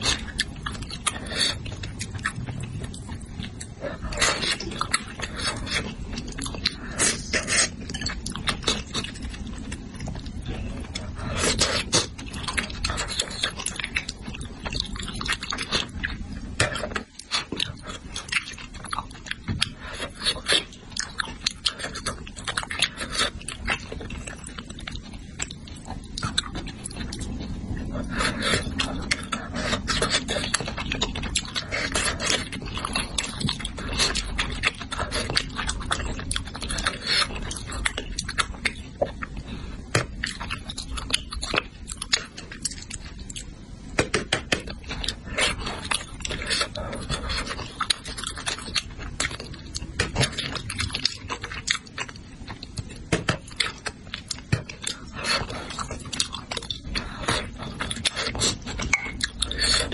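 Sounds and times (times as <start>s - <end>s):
chewing and mouth sounds: 0.0s - 59.9s.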